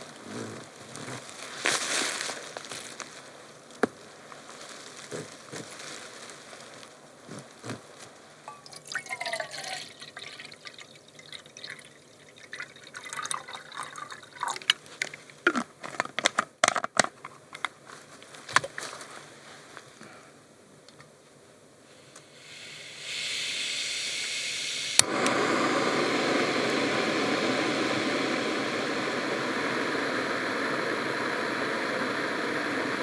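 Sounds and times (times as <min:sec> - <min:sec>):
water trickling and dripping: 0:08.5 - 0:15.4.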